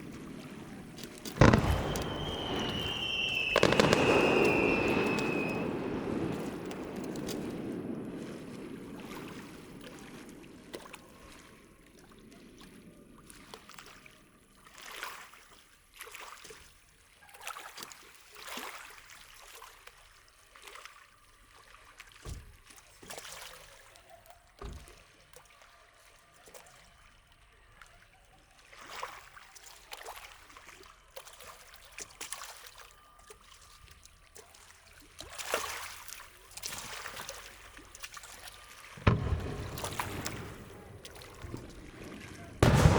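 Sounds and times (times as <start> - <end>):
small waves lapping: 0.0 - 16.8, 34.4 - 42.9.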